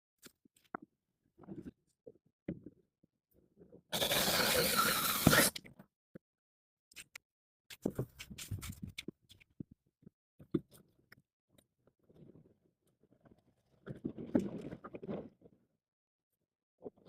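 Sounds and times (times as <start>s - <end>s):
hard parts rasping scrape: 4.0s - 5.6s.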